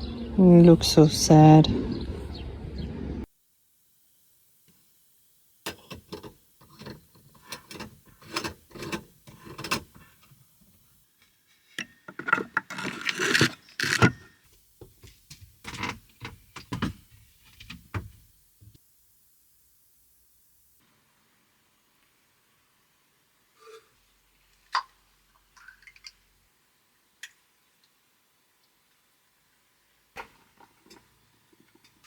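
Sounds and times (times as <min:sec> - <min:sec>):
objects being handled clicking: 0:11.8 - 0:14.3.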